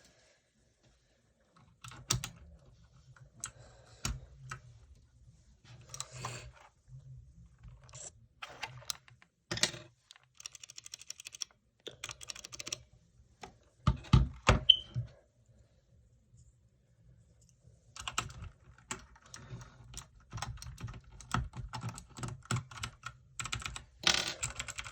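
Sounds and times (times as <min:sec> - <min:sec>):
mechanical keyboard typing: 0:01.8 - 0:02.4, 0:07.9 - 0:12.8, 0:18.0 - 0:24.9.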